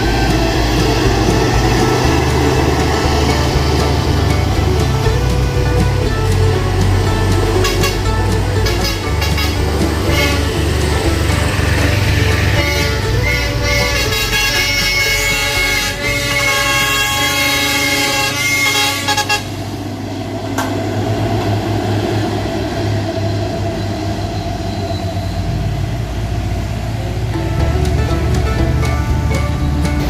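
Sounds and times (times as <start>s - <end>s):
truck air horn blaring: 0.0s - 19.7s
diesel engine rumble: 0.0s - 30.0s
road noise: 0.0s - 30.0s.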